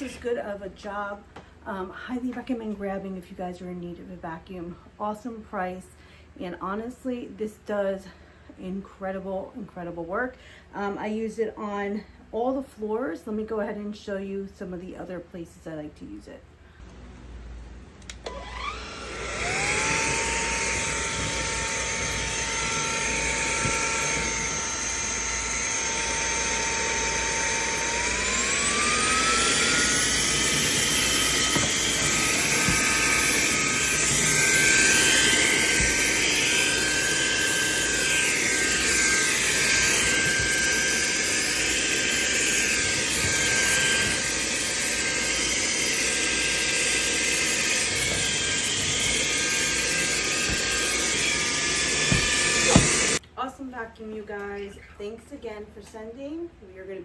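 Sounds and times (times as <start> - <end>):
vacuum cleaner motor whine: 16.8 - 53.2.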